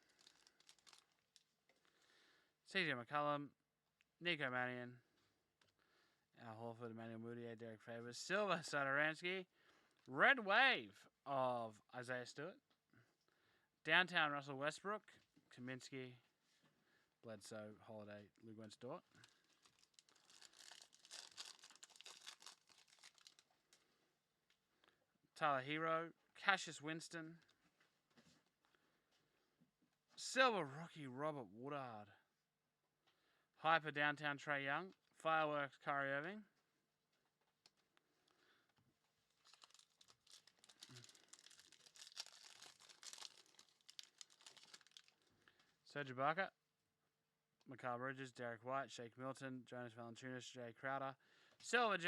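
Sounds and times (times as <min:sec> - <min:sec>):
trading cards rustling: 0:00.0 - 0:01.5, 0:19.2 - 0:23.8, 0:39.4 - 0:45.2
plastic wrapper crinkling and tearing: 0:00.0 - 0:01.6, 0:19.1 - 0:23.9, 0:39.3 - 0:45.7.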